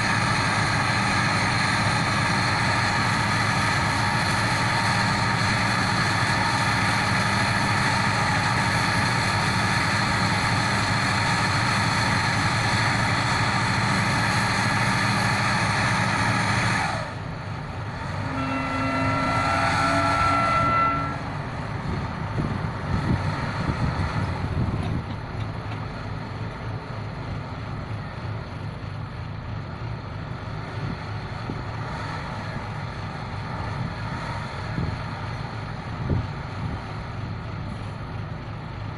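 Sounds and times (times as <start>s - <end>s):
diesel pile-driving rig running: 0.0s - 38.9s.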